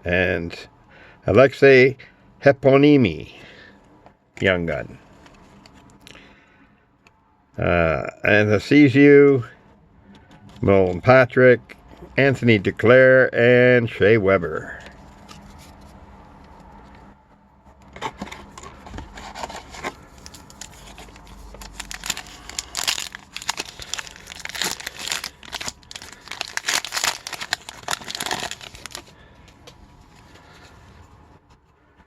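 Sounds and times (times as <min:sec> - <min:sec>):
foil wrapper tearing and rustling: 0:19.3 - 0:29.2.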